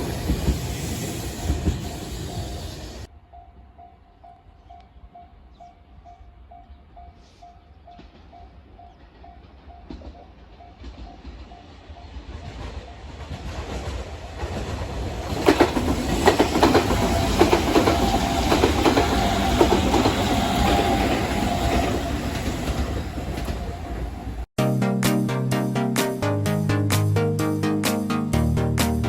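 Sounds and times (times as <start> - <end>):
train wheels clattering over joints: 9.4 - 24.4.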